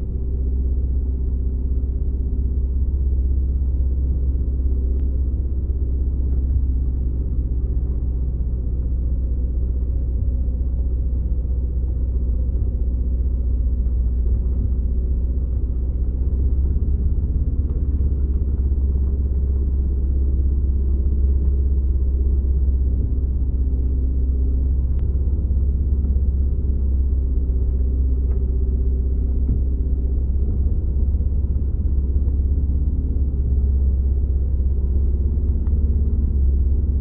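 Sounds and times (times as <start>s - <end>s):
vehicle engine rumbling: 0.0s - 37.0s.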